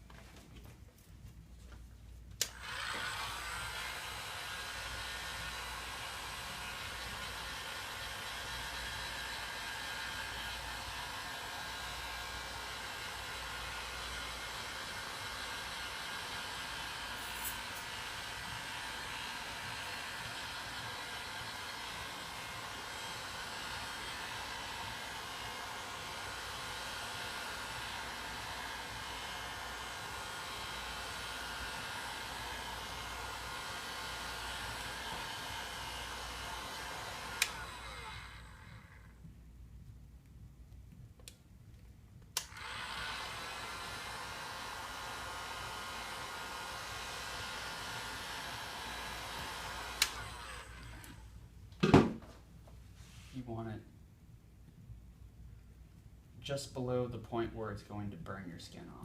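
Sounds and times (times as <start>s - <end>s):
hot-air blower whirring: 2.4s - 39.3s, 42.4s - 52.3s.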